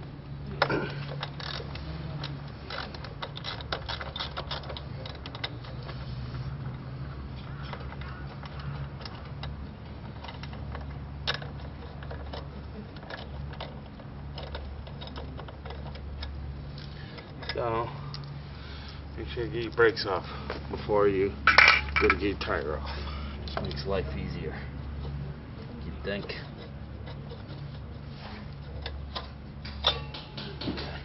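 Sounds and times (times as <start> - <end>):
steady low hum: 0.0 - 31.0
metallic clicks of hand tools: 28.6 - 31.0.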